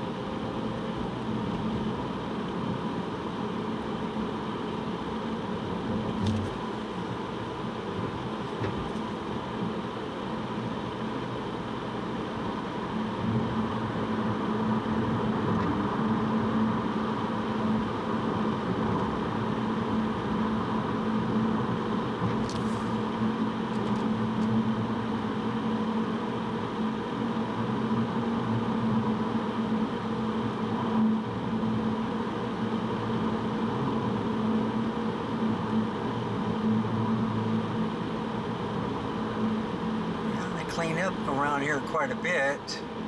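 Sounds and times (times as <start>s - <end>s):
car cabin engine and tyre noise: 0.0s - 43.0s.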